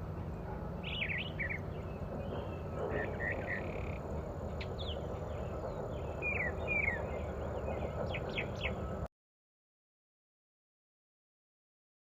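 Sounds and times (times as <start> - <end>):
steady low background noise: 0.0 - 9.1
lovebirds chirping: 0.1 - 9.1.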